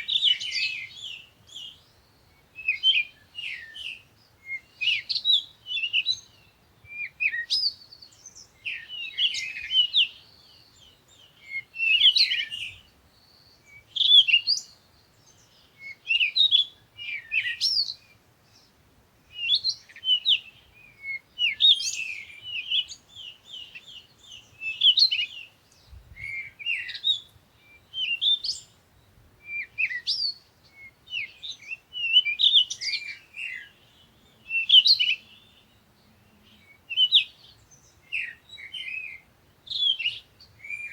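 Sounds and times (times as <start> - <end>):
songbirds chirping: 0.0 - 40.9.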